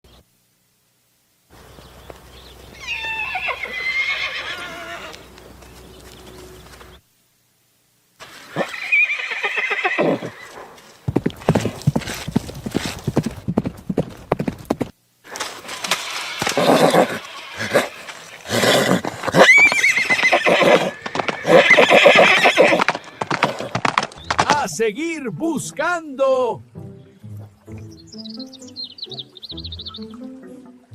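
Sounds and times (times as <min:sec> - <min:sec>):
horse neighing: 0:02.8 - 0:05.3, 0:08.2 - 0:10.6, 0:16.2 - 0:24.8
hooves clip-clopping: 0:04.6 - 0:07.0, 0:10.2 - 0:26.0.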